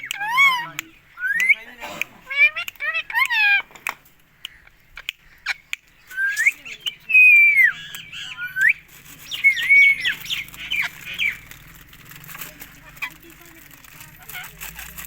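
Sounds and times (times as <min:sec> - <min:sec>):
parakeet whistled calls and squawks: 0:00.0 - 0:03.7, 0:04.4 - 0:11.8.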